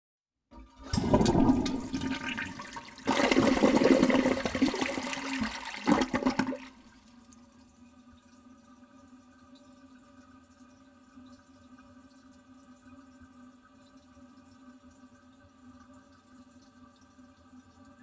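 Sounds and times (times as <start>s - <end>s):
toilet flushing: 0.5s - 7.5s.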